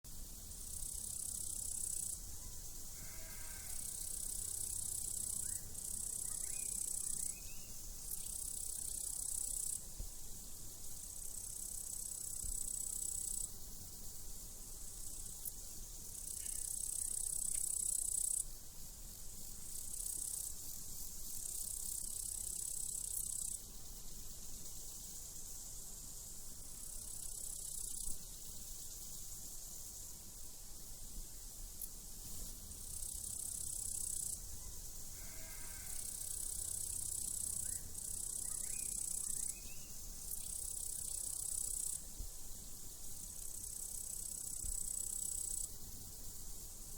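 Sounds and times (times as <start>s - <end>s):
crickets chirping: 0.1s - 46.9s
sheep bleating faintly: 3.0s - 3.9s, 35.1s - 36.1s.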